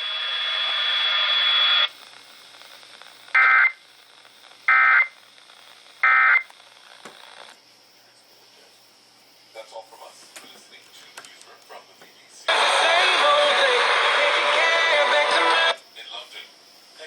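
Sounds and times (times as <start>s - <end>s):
faint radio hiss: 0.0s - 17.0s
data bursts: 0.3s - 6.5s.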